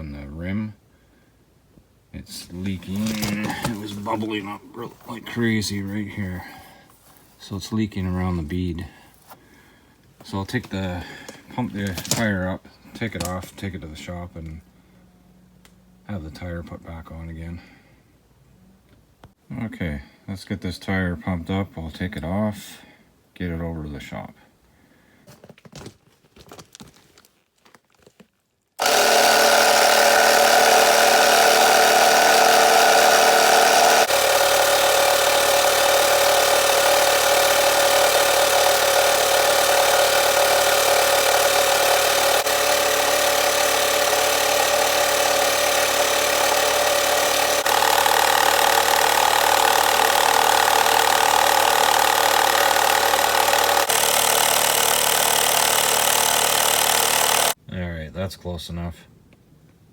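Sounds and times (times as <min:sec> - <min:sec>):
air compressor motor hum: 0:02.7 - 0:05.3, 0:28.8 - 0:57.6.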